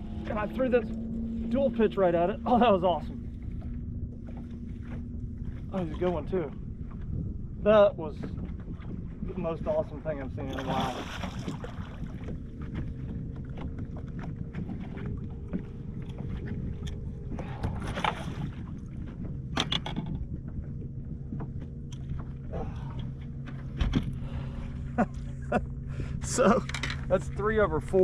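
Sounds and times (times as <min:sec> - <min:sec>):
boat motor humming: 0:00.0 - 0:28.0
wind noise on microphone: 0:03.4 - 0:27.2
knocks or splashes: 0:10.5 - 0:12.3.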